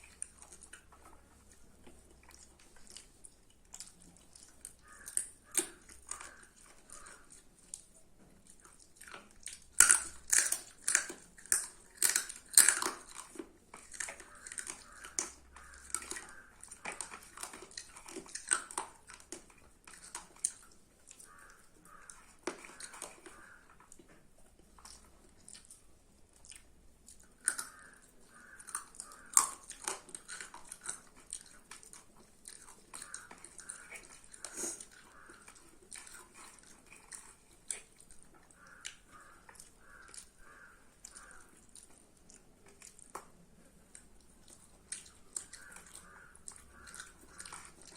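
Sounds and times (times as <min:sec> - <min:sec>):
person chewing with wet mouth smacks: 0:00.0 - 0:47.9.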